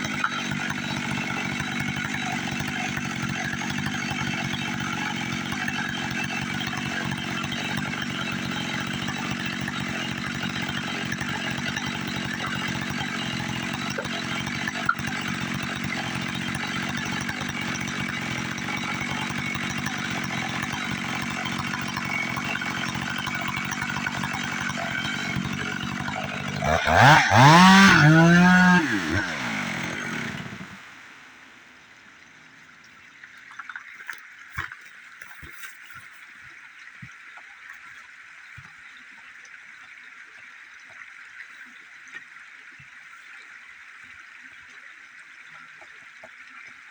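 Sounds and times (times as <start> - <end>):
chainsaw sawing log: 0.0 - 31.5, 34.0 - 36.4.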